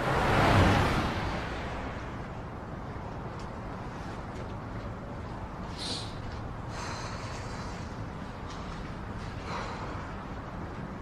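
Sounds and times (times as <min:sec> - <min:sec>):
faint brief hissing: 0:05.8 - 0:06.2.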